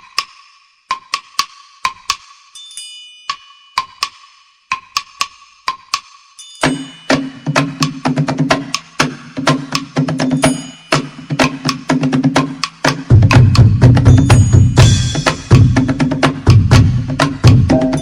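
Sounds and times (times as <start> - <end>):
percussion dance music: 0.0 - 18.0
heavy low drum: 6.7 - 18.0.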